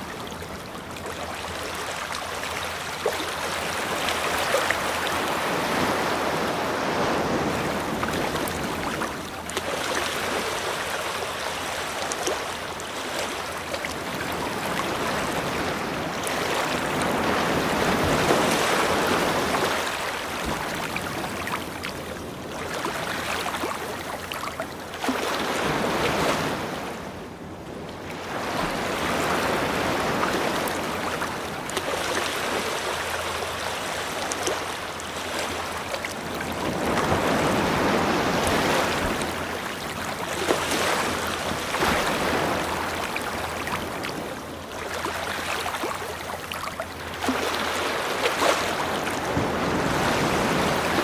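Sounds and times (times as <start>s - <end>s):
ocean waves breaking on beach: 0.0s - 51.0s.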